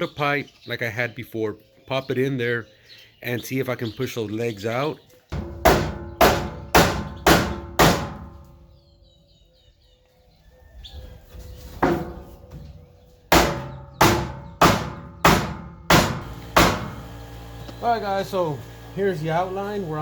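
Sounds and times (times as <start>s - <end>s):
small bird chirping: 0.0s - 15.4s
hammer striking steel: 5.4s - 8.5s, 13.3s - 17.0s.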